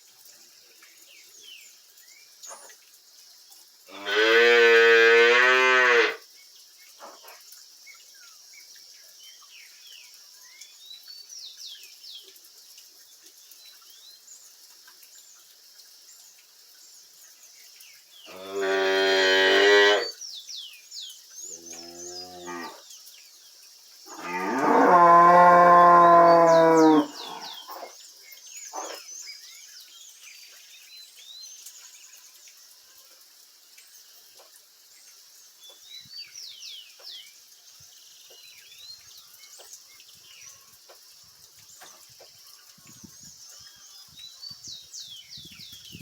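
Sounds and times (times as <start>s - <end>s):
cows mooing: 4.0s - 6.2s, 18.3s - 20.1s, 21.7s - 22.8s, 24.1s - 27.9s.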